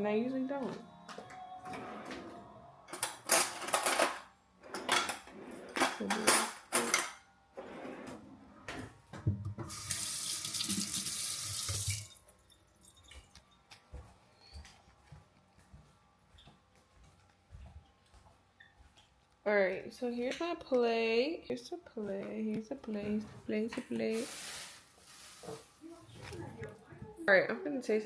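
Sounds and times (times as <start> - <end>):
tap running into sink: 9.3 - 12.1.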